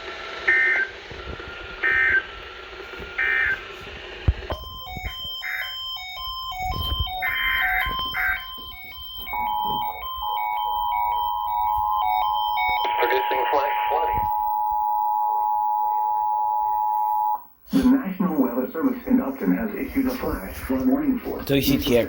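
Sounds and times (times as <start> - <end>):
beeping electronic melody: 4.5 - 17.4
two-tone alert signal: 4.5 - 17.4
short data bursts: 4.5 - 17.5.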